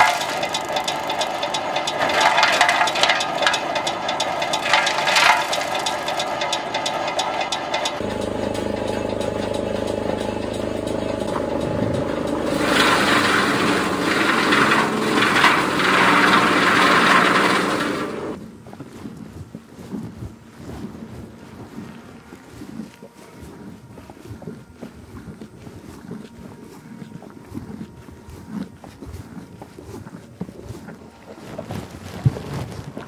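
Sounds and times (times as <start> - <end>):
forage cutter rattling: 0.0 - 18.4
low rough machine hum: 0.0 - 31.7.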